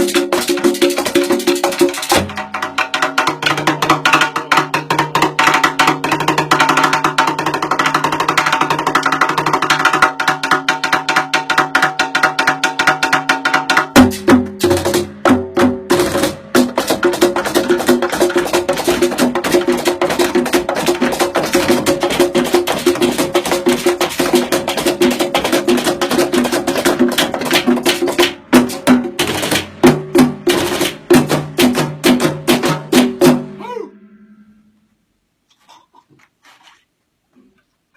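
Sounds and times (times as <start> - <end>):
wood-block-like percussion: 0.0 - 33.8
held pitched tones: 33.5 - 35.2.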